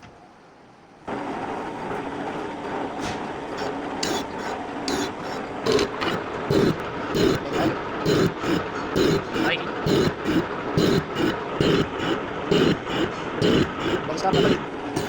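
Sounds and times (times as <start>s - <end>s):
mechanical scraping: 3.5s - 15.0s.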